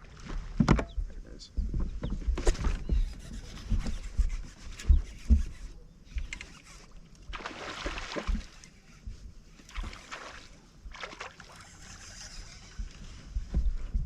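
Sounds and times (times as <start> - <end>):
knocks and rubbing on kayak: 1.7 - 5.8, 12.6 - 14.0
low thumps: 12.8 - 14.0.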